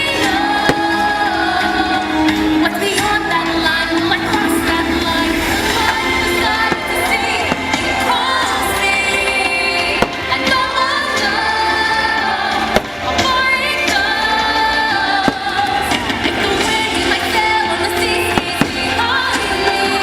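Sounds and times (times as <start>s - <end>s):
pop-orchestral song with singing: 0.0s - 20.0s
fireworks bangs: 0.6s - 1.3s, 5.3s - 8.9s, 9.8s - 10.8s, 15.2s - 16.7s, 18.3s - 19.4s.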